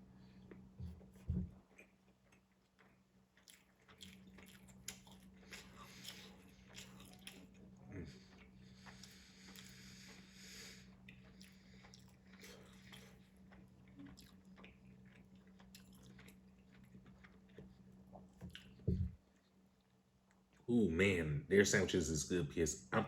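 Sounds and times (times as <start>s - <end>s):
low hum: 0.0s - 1.6s, 18.2s - 19.2s
person chewing food: 0.1s - 20.6s
short thump: 18.9s - 19.2s.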